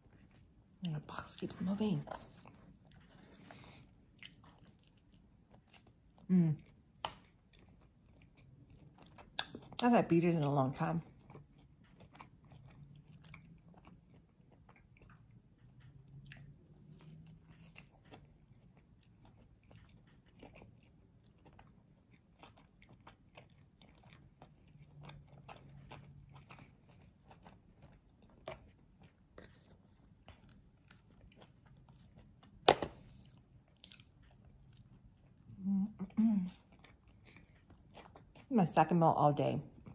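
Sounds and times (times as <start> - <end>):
person chewing food: 0.0 - 1.0, 1.6 - 9.8, 10.4 - 38.5.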